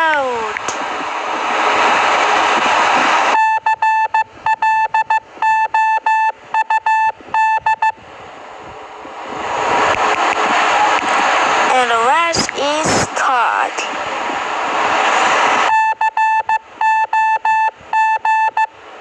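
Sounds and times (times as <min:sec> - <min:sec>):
morse code beeps: 0:03.4 - 0:08.0, 0:15.7 - 0:18.7.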